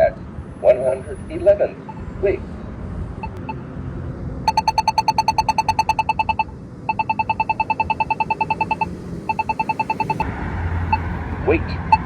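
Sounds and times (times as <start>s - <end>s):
rapid beeping ticks: 3.2s - 3.6s, 4.5s - 10.2s.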